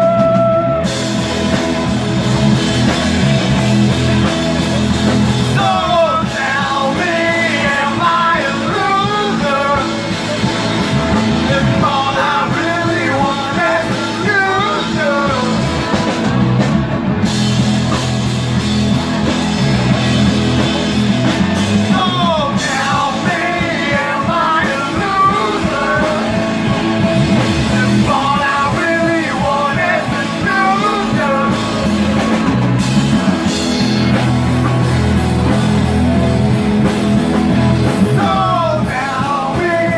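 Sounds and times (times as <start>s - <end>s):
rock band playing: 0.0s - 39.9s
lead singer singing: 5.1s - 16.6s, 21.6s - 39.9s.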